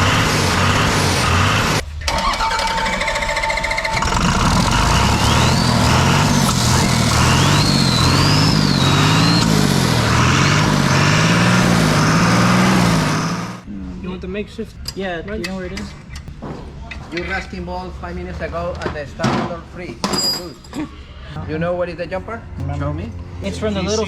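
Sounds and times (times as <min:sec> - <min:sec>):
diesel engine speed wavering: 0:00.0 - 0:13.7.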